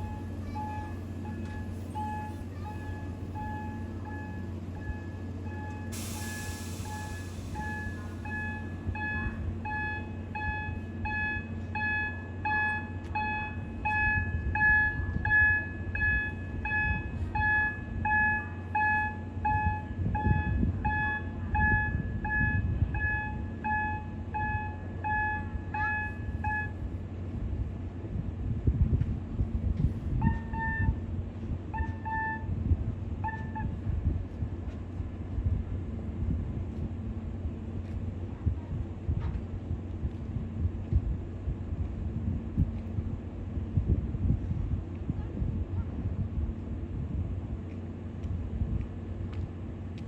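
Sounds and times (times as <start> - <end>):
warning beeper beeping: 0.0 - 26.7
brief hiss: 6.0 - 8.0
low rumble: 24.2 - 50.0.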